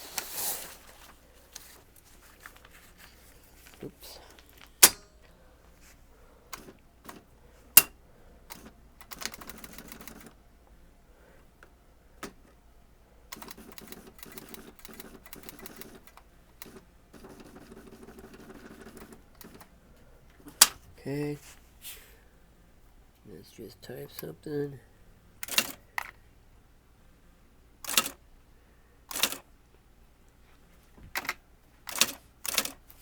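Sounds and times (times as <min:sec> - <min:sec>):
typewriter clicks: 0:04.3 - 0:05.3, 0:06.5 - 0:10.3, 0:13.3 - 0:19.7, 0:25.4 - 0:26.2, 0:27.8 - 0:28.2, 0:29.1 - 0:29.5, 0:31.1 - 0:33.0
typewriter motor running: 0:08.5 - 0:10.3, 0:13.3 - 0:19.7, 0:25.4 - 0:25.8, 0:27.8 - 0:28.2, 0:29.1 - 0:29.4, 0:31.9 - 0:33.0.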